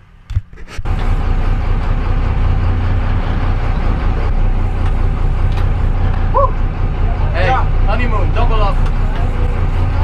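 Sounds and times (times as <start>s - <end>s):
boat engine noise: 0.0s - 10.0s
wind: 0.0s - 10.0s.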